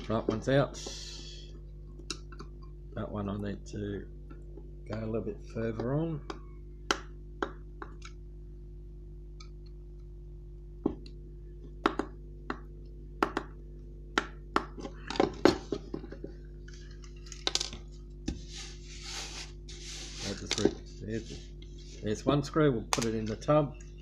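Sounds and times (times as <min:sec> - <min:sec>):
steady electrical hum: 0:00.0 - 0:24.0
soft rustling handling: 0:17.9 - 0:22.4.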